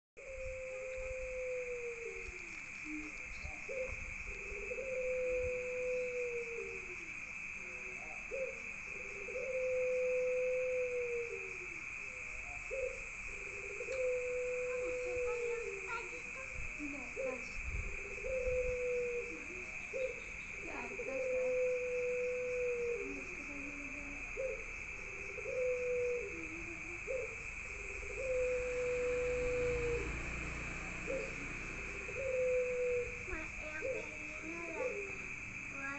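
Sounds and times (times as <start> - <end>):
crickets chirping: 0.2 - 35.9
dove cooing: 0.2 - 35.9.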